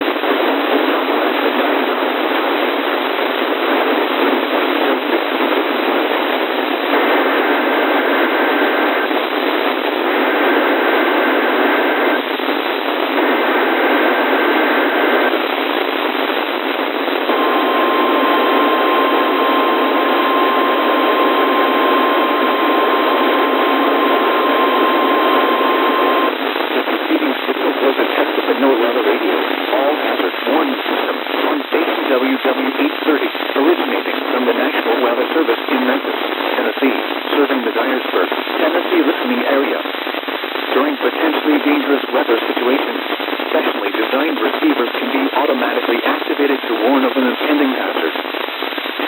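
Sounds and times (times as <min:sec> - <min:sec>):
radio receiver static: 0:00.0 - 0:49.0
steady warning alarm tone: 0:17.2 - 0:26.4.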